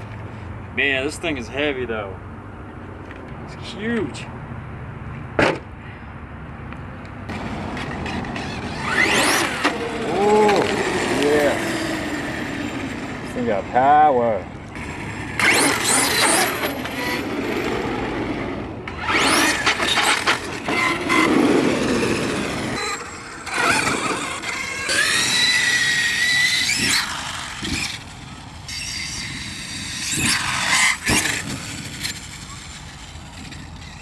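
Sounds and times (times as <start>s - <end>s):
electric motor whine: 8.4s - 13.2s.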